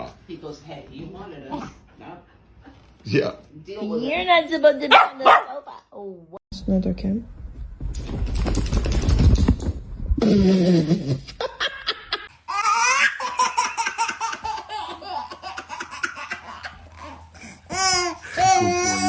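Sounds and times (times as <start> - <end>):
laughter in quick pulses: 10.2 - 12.3.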